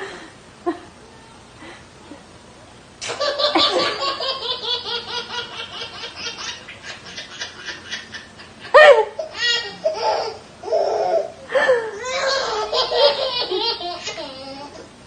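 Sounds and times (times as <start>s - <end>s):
person laughing: 8.0s - 9.3s.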